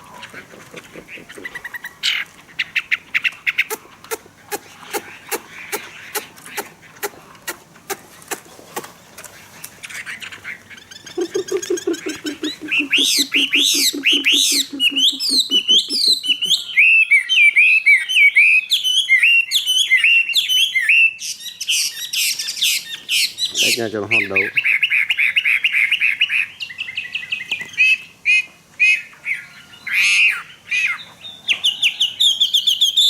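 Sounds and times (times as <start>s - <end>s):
bird rattling call: 9.8s - 16.6s
bird singing whistled notes: 12.3s - 28.1s, 28.9s - 33.0s.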